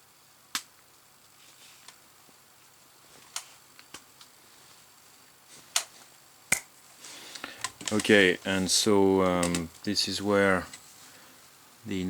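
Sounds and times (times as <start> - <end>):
faint room hiss: 0.0 - 12.0
light handling clicks and taps: 9.2 - 9.7.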